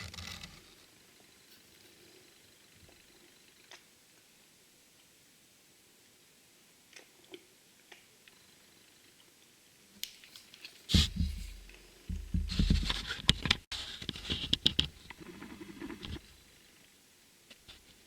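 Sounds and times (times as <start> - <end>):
bumps and knocks of handling: 10.9 - 15.0.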